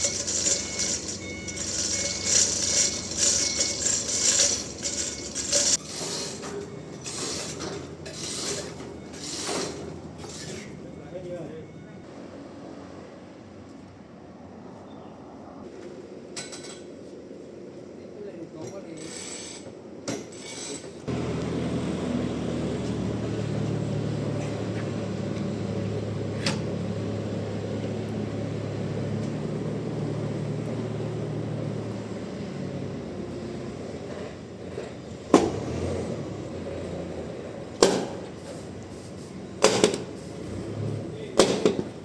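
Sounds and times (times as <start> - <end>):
bandsaw sawmill running: 0.0 - 10.9, 20.4 - 38.6.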